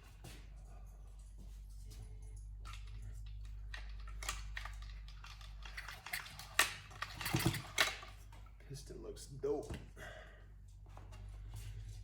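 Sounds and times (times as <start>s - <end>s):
steady low hum: 0.0s - 12.0s
metal tools clicking and tapping: 1.2s - 8.4s.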